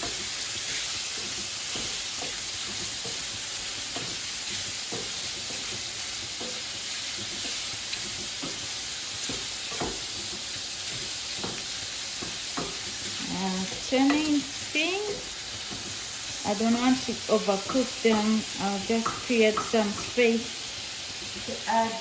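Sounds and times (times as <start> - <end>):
shrimps sizzling in oil: 0.0 - 22.0
utensil clacking in wok: 1.0 - 13.2.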